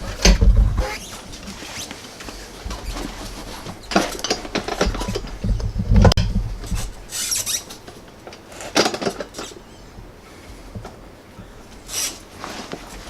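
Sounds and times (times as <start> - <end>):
heavy thud: 0.0 - 1.0
tools and parts knocking: 3.6 - 6.9.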